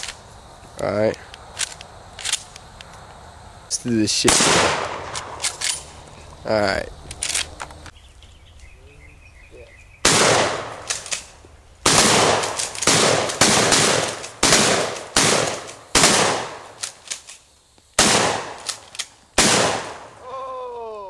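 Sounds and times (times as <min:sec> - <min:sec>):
shotgun shots: 0:04.2 - 0:05.6, 0:10.0 - 0:11.2, 0:11.8 - 0:16.8, 0:18.0 - 0:18.8, 0:19.4 - 0:20.2.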